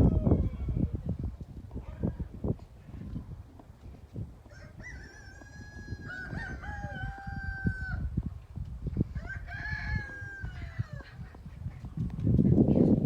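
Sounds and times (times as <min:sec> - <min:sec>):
rooster crowing: 0:04.5 - 0:08.1, 0:09.2 - 0:11.1.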